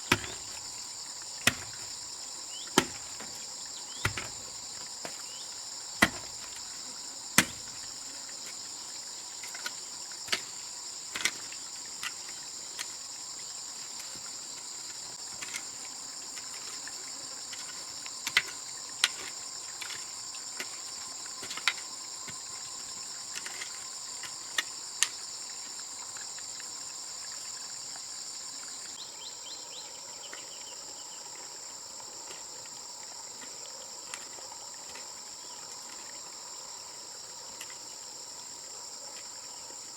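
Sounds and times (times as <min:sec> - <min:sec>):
crickets chirring: 0:00.0 - 0:39.9
sharp knocks and taps: 0:04.0 - 0:05.2.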